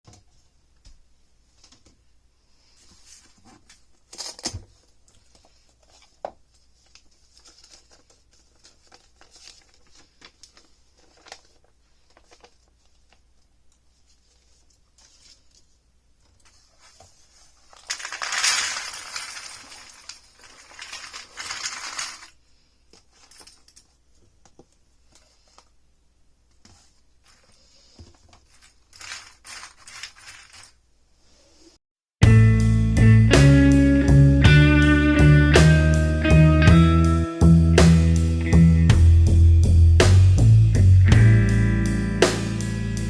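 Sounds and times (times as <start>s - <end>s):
puzzle pieces rustling and rattling: 6.8s - 13.1s, 16.8s - 22.4s, 23.0s - 24.0s, 28.4s - 30.8s
puzzle pieces clicking: 17.8s - 22.3s.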